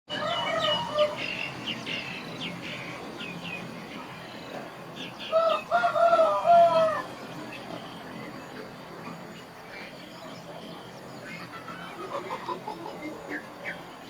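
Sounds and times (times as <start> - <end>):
rooster crowing: 0.1 - 1.4, 5.3 - 7.1
chicks cheeping: 0.1 - 4.2.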